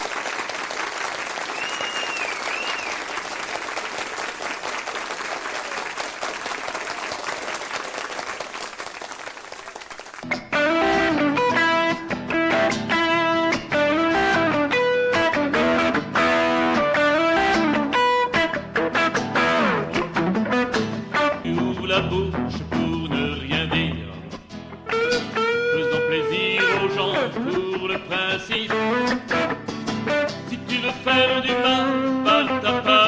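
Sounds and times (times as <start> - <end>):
audience applause: 0.0 - 10.4
whistle: 1.5 - 3.0
guitar playing single notes: 10.3 - 32.9.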